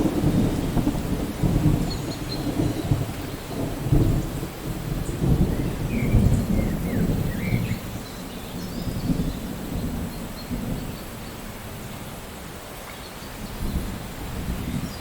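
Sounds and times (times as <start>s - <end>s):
rolling thunder: 0.0s - 11.9s
rain hiss: 0.0s - 15.0s.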